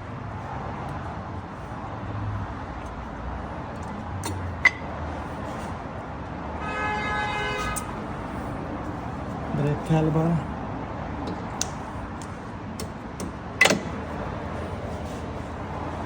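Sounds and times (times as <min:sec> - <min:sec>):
steady horn-like tone: 0:06.6 - 0:07.9.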